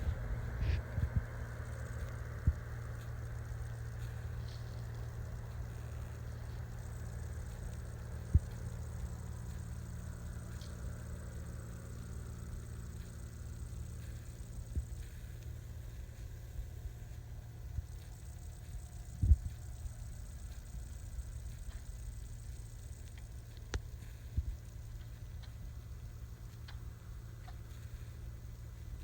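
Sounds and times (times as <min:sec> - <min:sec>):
propeller plane engine droning: 0:00.0 - 0:29.0
faint clicks: 0:17.8 - 0:28.2.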